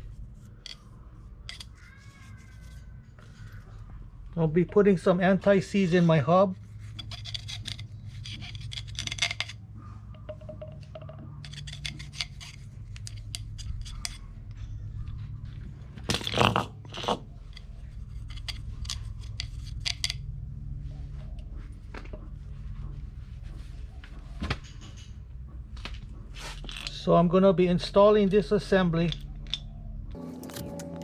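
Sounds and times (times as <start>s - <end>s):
scrapes and clicks on metal hub: 0.0s - 3.7s, 5.8s - 15.2s, 16.2s - 20.2s, 30.1s - 31.0s
low steady hum: 0.0s - 16.2s, 29.1s - 31.0s.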